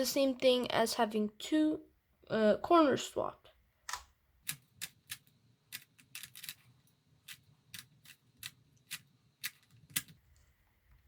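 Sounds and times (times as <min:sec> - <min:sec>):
plastic puzzle cube clacking: 0:03.9 - 0:06.6, 0:07.3 - 0:10.2.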